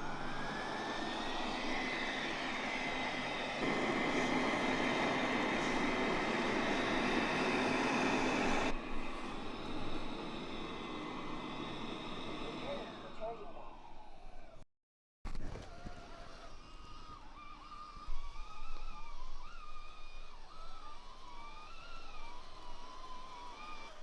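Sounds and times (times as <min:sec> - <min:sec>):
robot vacuum running: 0:00.0 - 0:14.6, 0:16.1 - 0:24.0.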